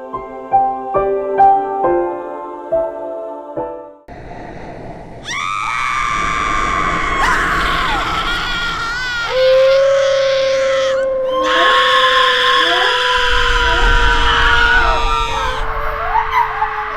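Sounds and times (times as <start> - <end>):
piano music: 0.0 - 4.1
person screaming: 5.3 - 16.9.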